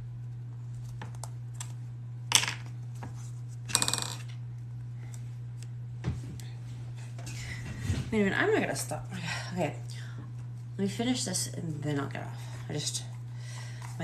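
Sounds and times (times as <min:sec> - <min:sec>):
low fan hum: 0:00.0 - 0:14.0.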